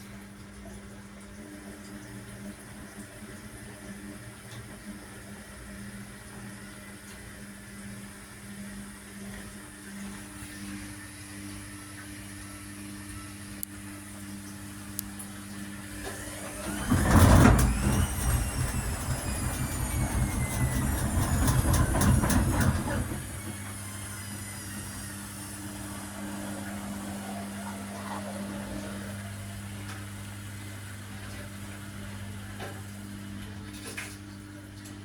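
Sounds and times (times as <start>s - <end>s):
motor whine falling in pitch: 15.1s - 30.2s
washing machine drum rumbling: 16.0s - 29.3s.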